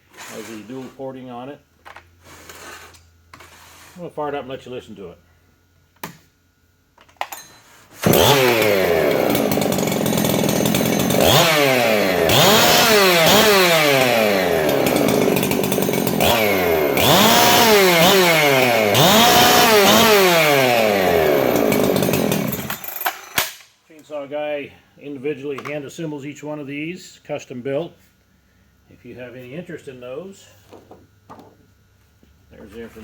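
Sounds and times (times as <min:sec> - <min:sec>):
chainsaw revving: 0:08.0 - 0:23.6.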